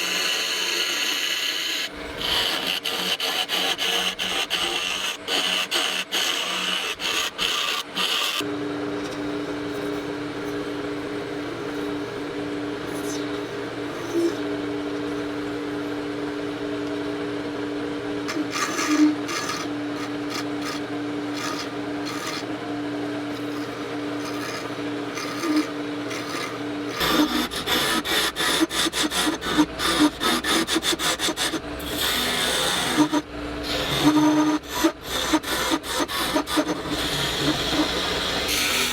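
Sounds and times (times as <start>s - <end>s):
tool rasping on spinning resin: 0.0s - 16.0s, 18.2s - 38.9s
lathe motor hum: 0.0s - 38.9s.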